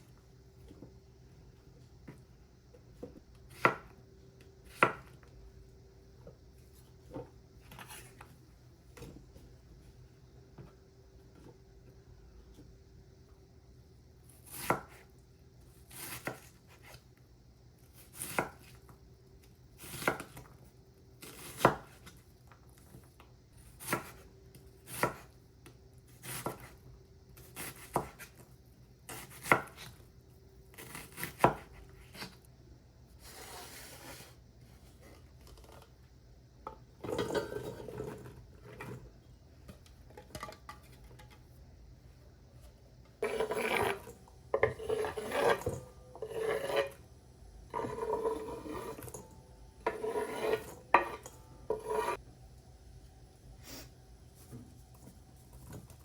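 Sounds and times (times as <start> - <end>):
knife cutting on cutting board: 49.8 - 52.2.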